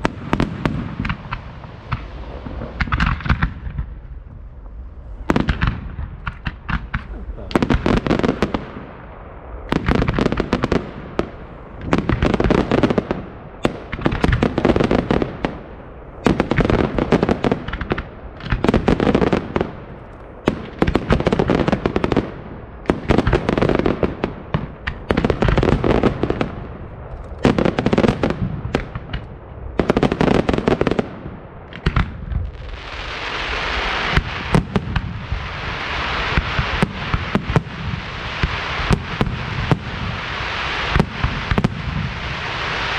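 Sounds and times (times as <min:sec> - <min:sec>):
fireworks hissing crackle: 0:00.0 - 0:08.9, 0:31.7 - 0:42.9
fireworks bangs: 0:00.0 - 0:42.9.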